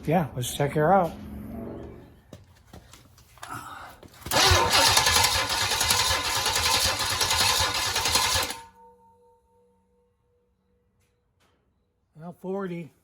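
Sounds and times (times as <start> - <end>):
engine starter cranking: 4.2 - 8.8.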